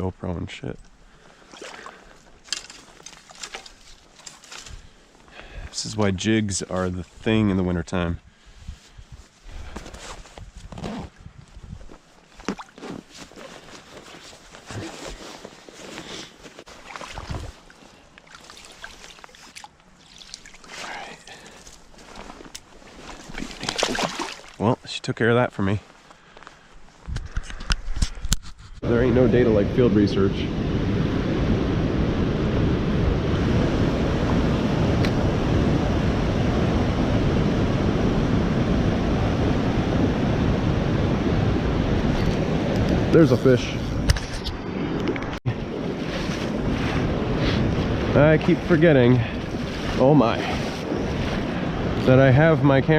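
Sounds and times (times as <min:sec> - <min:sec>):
water splashing in creek: 0:01.4 - 0:04.8, 0:12.4 - 0:13.1, 0:16.6 - 0:24.8.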